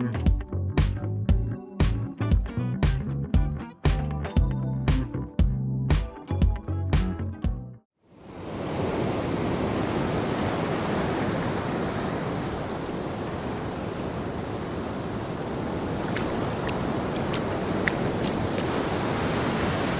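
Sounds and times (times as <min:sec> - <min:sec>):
wind: 0:08.0 - 0:19.9
sea water rushing: 0:08.2 - 0:19.9.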